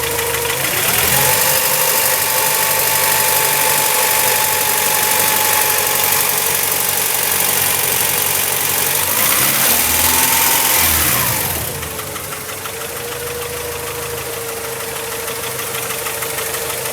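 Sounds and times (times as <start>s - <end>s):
car engine running rough: 0.0s - 16.9s.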